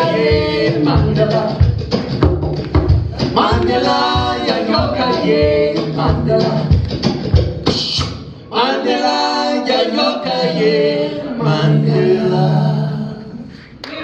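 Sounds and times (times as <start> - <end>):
voices singing in harmony: 0.0 - 2.2, 3.1 - 14.0
band instruments: 0.0 - 13.6.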